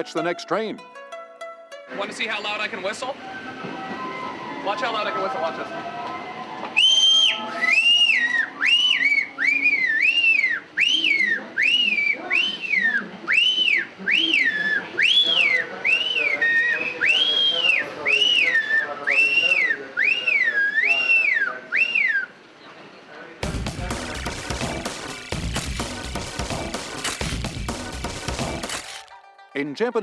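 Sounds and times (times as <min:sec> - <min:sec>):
person whistling high notes: 0:06.7 - 0:22.3.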